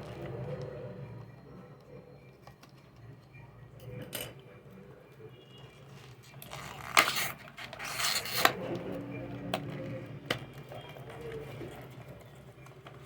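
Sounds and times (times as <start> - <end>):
plastic packaging rustling: 5.8 - 8.9.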